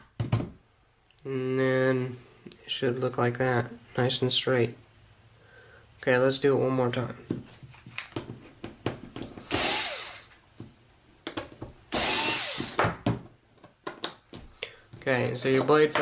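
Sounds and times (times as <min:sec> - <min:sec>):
power screwdriver motor: 0:09.5 - 0:10.3, 0:11.9 - 0:12.8.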